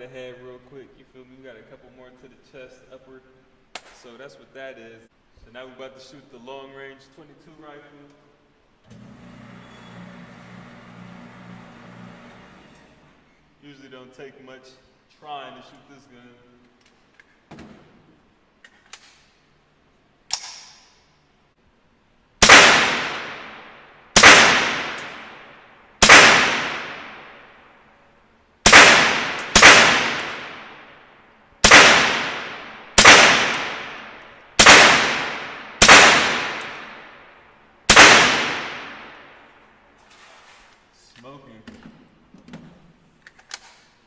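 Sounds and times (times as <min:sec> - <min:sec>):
rifle shots echoing: 0:22.4 - 0:27.7, 0:28.6 - 0:39.5.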